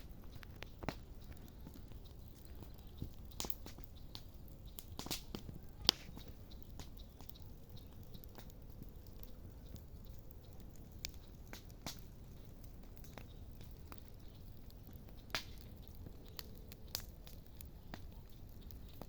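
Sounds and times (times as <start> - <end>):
campfire crackling: 0.0 - 19.0
sharp fire pops: 0.0 - 19.0.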